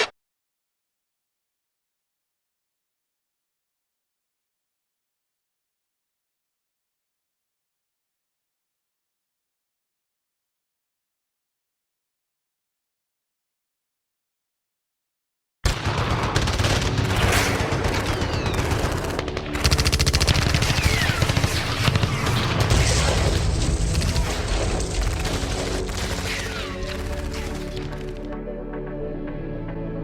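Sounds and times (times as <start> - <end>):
automatic gunfire: 15.7 - 28.3
music: 16.3 - 30.0.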